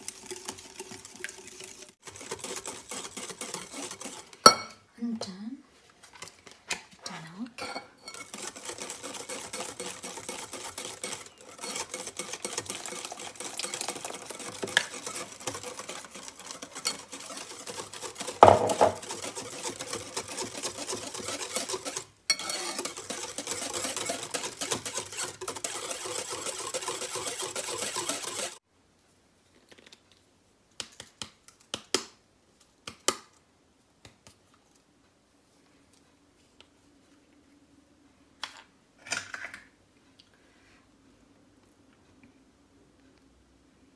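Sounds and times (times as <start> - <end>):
whisk scraping mixing bowl: 0.0 - 4.5, 8.0 - 28.6.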